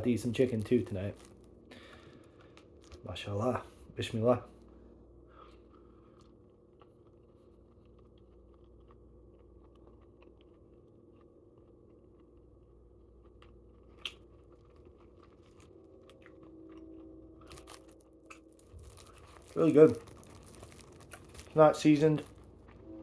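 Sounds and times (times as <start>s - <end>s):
low room hum: 0.0s - 23.0s
person chewing food: 5.3s - 23.0s.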